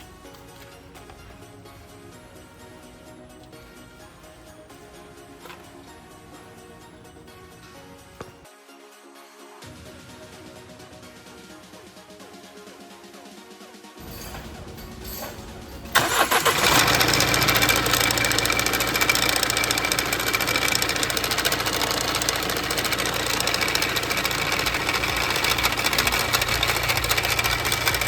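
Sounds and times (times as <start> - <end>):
car engine cranking and starting: 14.0 - 28.0
engine running with fast clatter: 14.0 - 28.0.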